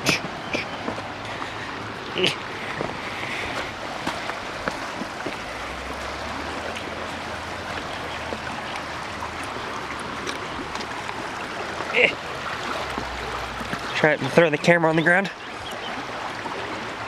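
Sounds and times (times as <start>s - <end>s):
river flowing: 0.0s - 17.0s.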